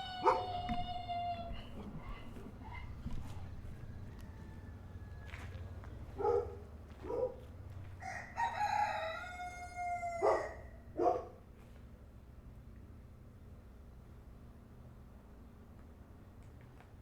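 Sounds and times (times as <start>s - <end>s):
rooster crowing: 0.0s - 5.7s, 8.0s - 10.7s
low background hum: 0.0s - 17.0s.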